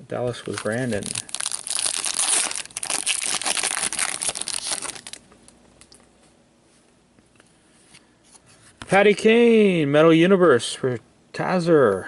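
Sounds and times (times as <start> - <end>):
foil wrapper crinkling: 0.3 - 5.3.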